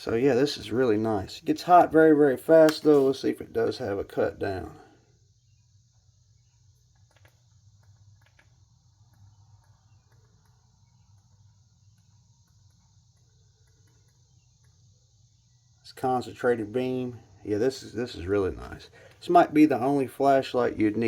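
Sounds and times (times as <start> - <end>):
low hum and hiss: 0.0 - 21.0
faint clicks: 6.7 - 14.9.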